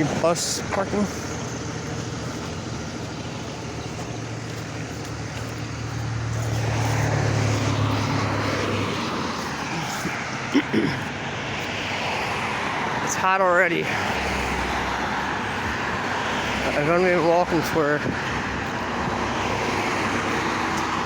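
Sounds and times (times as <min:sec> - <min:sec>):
heavy vehicle engine droning: 0:00.0 - 0:21.0
road traffic: 0:00.0 - 0:21.0.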